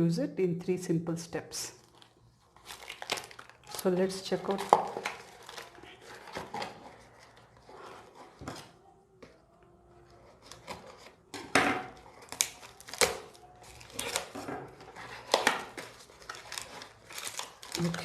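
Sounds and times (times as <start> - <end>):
packaging crinkling and rustling: 1.8 - 8.8, 10.0 - 18.0.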